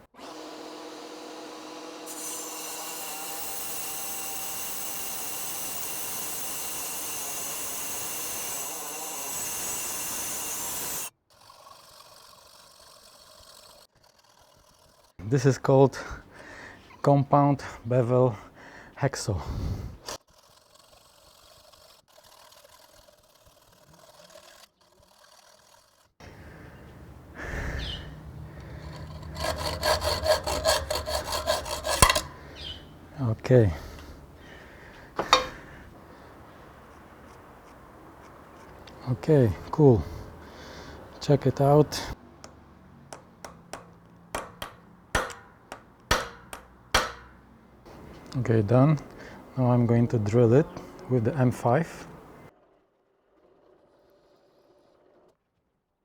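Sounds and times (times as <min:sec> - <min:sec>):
hacksaw rasping strokes: 0:02.0 - 0:16.2, 0:19.5 - 0:51.1
sharp knocks and taps: 0:42.4 - 0:47.4.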